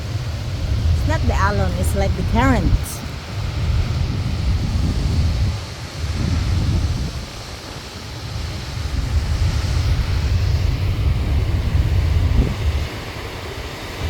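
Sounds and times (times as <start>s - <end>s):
surf washing on boulders: 0.0s - 14.0s
wind buffeting microphone: 0.5s - 13.0s.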